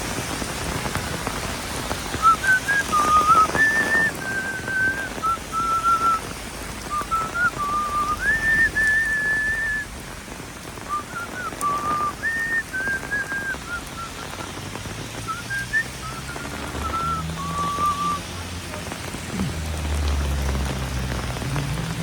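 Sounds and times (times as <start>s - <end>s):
heavy rain hiss: 0.0s - 22.0s
person whistling a tune: 2.2s - 6.2s, 6.9s - 9.9s, 10.9s - 14.3s, 15.2s - 18.2s.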